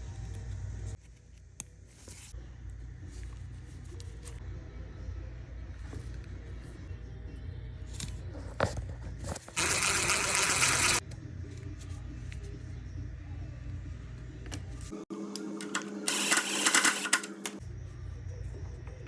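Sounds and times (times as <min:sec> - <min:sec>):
rapid mechanical tool clatter: 0:15.6 - 0:17.6.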